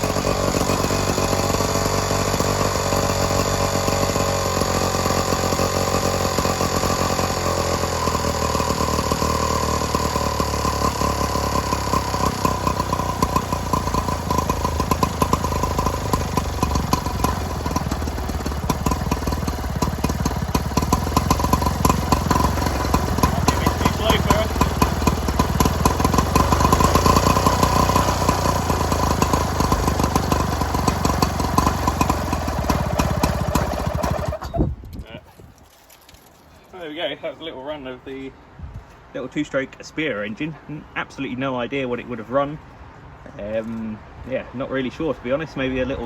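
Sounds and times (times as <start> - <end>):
two-stroke engine running: 0.0 - 34.6.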